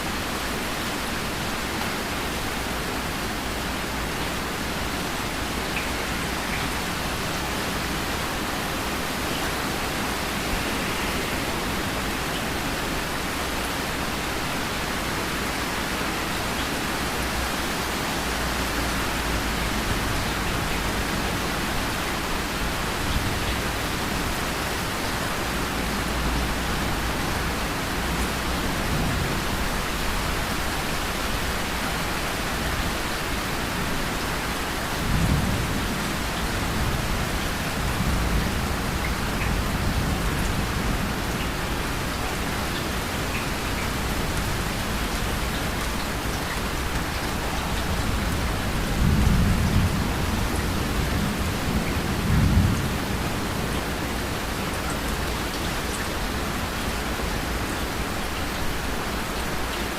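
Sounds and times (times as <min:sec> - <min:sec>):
heavy rain: 0:00.0 - 0:59.9.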